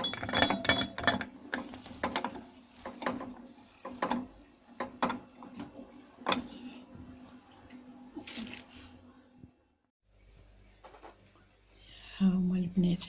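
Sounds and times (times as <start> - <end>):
kitchen utensils clicking and knocking: 0.0 - 6.6.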